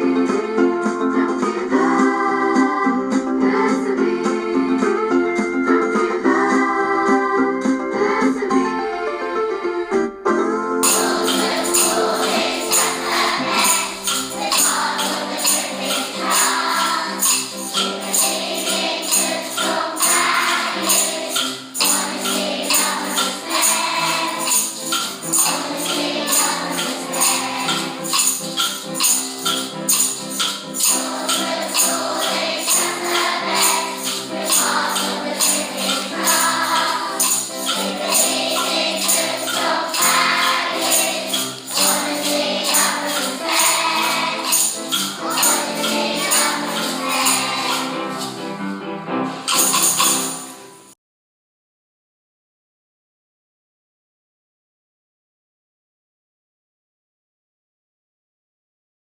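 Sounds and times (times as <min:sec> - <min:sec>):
voices singing: 0:00.0 - 0:09.2, 0:10.8 - 0:48.5
shaken percussion: 0:10.8 - 0:50.9.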